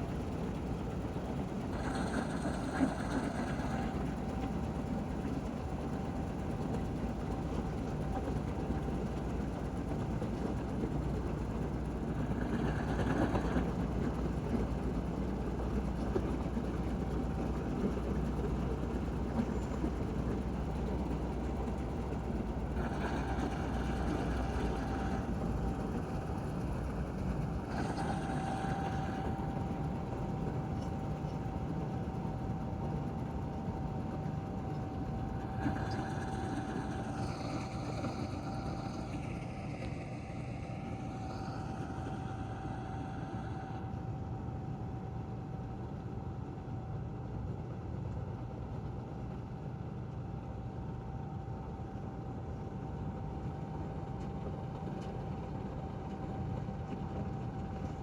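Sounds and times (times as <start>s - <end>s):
heavy machinery engine running: 19.0s - 31.4s.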